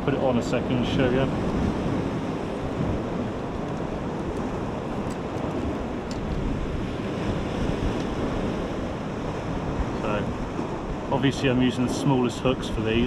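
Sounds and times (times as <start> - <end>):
surf washing against rocks: 0.0 - 13.0
wind buffeting microphone: 0.0 - 13.0.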